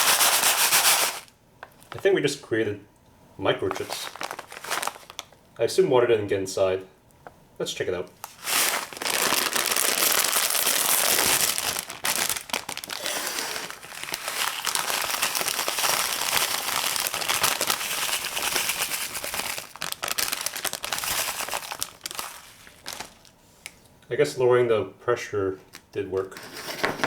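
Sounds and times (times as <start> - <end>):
plastic chip bag crinkling: 0.0 - 2.0, 3.6 - 5.4, 8.2 - 23.4, 25.7 - 27.0.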